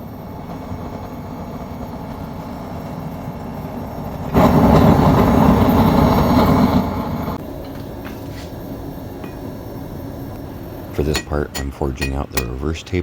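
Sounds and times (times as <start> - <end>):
forge roaring: 0.0 - 7.4.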